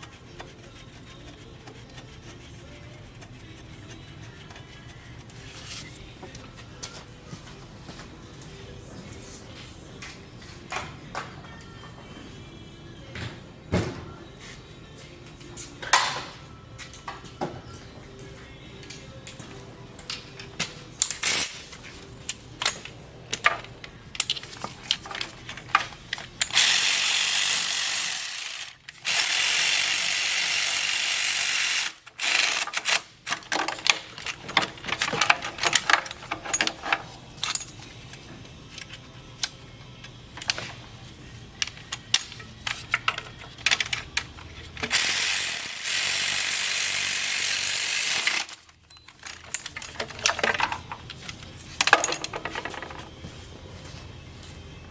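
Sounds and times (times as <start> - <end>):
hand tools clicking on metal: 18.8 - 37.8, 41.6 - 53.0.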